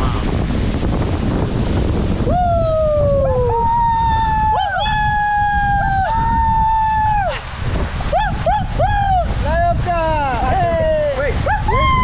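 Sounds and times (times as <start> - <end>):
waterfall roaring: 0.0 - 12.0
people whooping: 2.2 - 7.4, 8.1 - 9.4, 11.4 - 12.0.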